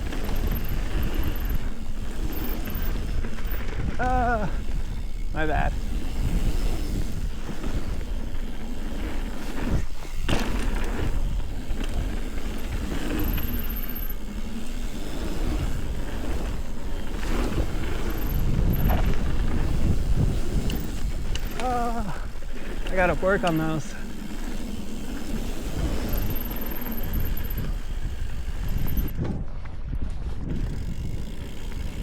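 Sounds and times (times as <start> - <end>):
bike tyres rolling on dirt: 0.0 - 32.0
bike knocks and clatters: 9.5 - 21.8
wind on microphone: 15.2 - 22.4, 25.6 - 32.0.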